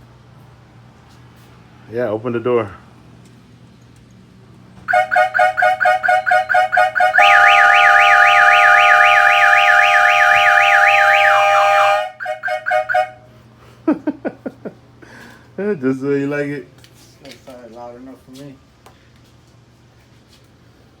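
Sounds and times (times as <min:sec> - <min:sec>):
car alarm siren: 0:04.9 - 0:13.2
steady horn tones: 0:04.9 - 0:13.2.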